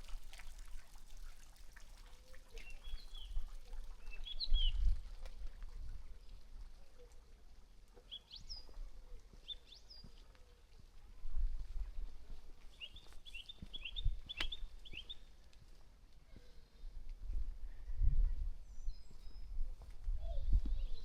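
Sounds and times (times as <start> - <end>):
songbirds whistling and chirping: 2.6 - 5.0, 8.0 - 8.8, 12.7 - 15.3, 18.6 - 21.0.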